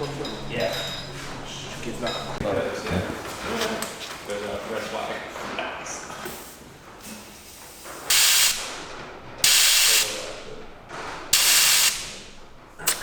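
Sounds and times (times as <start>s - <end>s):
compressed air hissing bursts: 6.4s - 8.8s, 9.4s - 10.3s, 11.3s - 12.2s.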